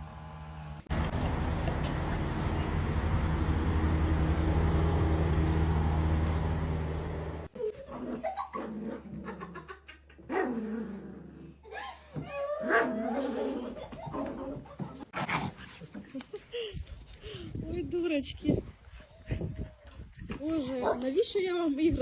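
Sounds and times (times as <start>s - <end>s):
low hum: 0.0s - 7.6s.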